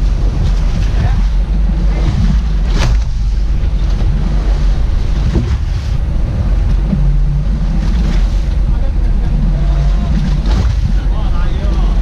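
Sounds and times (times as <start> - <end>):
boat engine rumble: 0.0 - 12.0
waves washing: 0.0 - 12.0
wind noise on microphone: 0.0 - 12.0.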